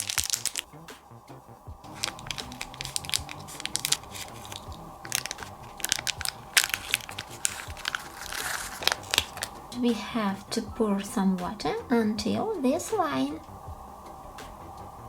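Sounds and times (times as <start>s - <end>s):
plastic packaging crinkling: 0.0s - 0.8s, 1.8s - 10.4s
soft background music: 0.0s - 15.0s.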